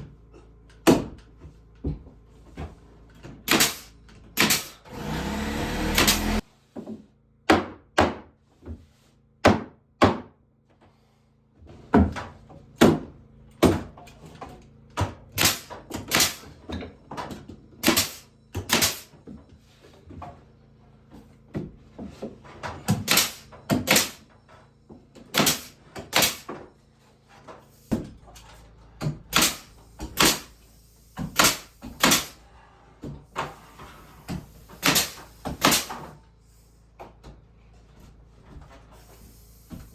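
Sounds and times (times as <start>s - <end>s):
knocks and thuds on wood: 4.4s - 8.3s, 9.4s - 10.4s.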